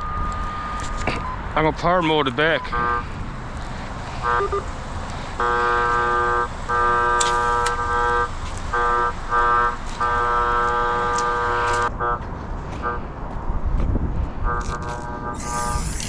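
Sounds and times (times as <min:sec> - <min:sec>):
buzzy cable locator tone: 0:04.2 - 0:04.7, 0:05.4 - 0:12.2, 0:14.5 - 0:16.0.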